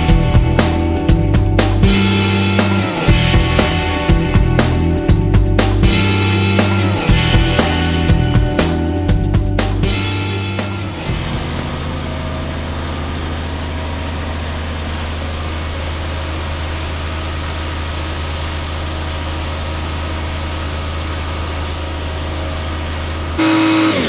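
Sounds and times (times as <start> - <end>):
engine droning steadily: 23.4 - 24.0.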